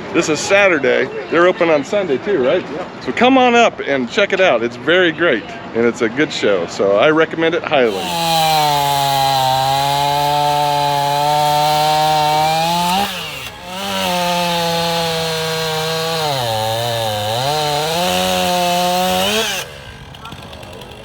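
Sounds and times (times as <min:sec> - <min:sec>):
chainsaw running at high revs: 0:07.8 - 0:21.0.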